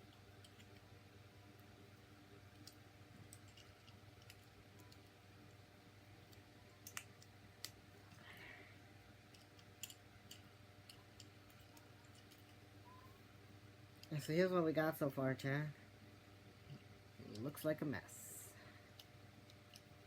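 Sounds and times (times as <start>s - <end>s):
low steady hum: 0.0s - 20.0s
plastic toy parts clicking: 2.5s - 5.1s, 6.3s - 7.8s, 9.3s - 12.6s, 19.0s - 19.9s.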